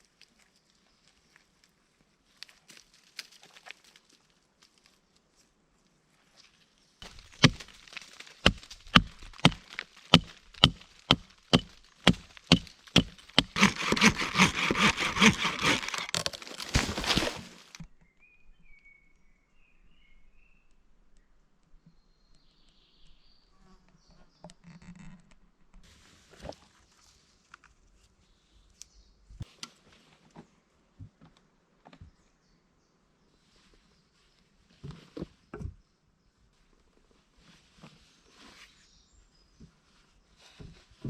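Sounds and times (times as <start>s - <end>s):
wood being chopped: 7.0s - 17.8s.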